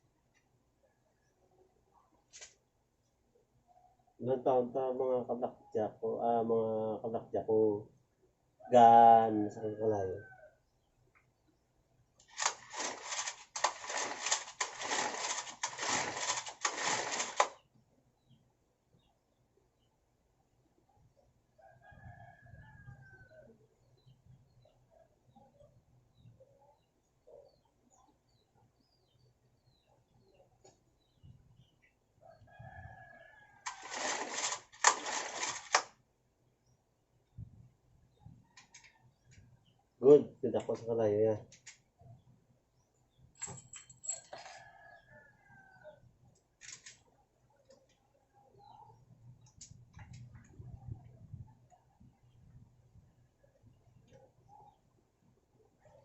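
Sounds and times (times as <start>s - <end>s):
recoil starter pulls: 12.3s - 17.6s, 33.7s - 35.9s
rooster crowing: 32.3s - 34.0s.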